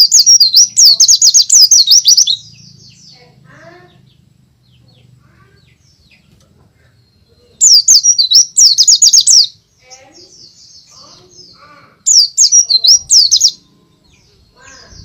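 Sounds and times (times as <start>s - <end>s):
bird whistling song: 0.0s - 2.5s, 7.6s - 9.6s, 12.1s - 15.0s
faint bird chirps: 0.0s - 15.0s.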